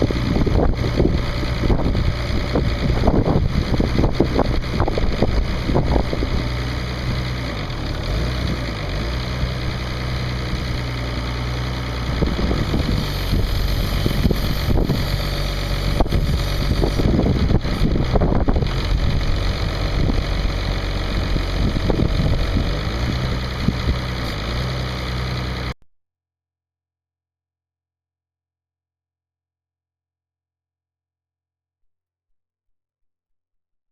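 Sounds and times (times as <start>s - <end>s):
diesel engine running: 0.0s - 25.8s.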